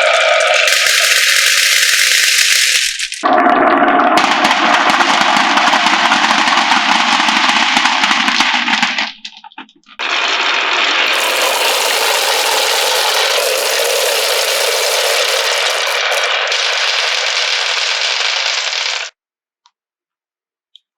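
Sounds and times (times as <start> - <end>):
marbles rattling down wooden tracks: 0.6 - 3.2, 11.1 - 19.1.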